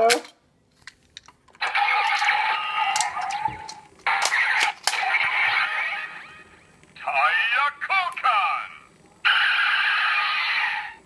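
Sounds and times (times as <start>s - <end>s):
toy electronic sound effects: 1.6s - 6.4s, 9.2s - 11.0s.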